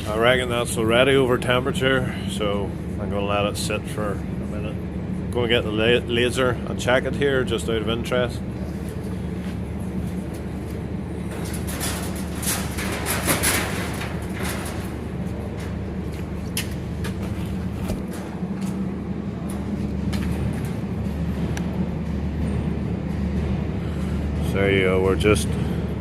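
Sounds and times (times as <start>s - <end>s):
low machine hum: 0.0s - 26.0s
tools and parts clattering: 11.2s - 15.8s.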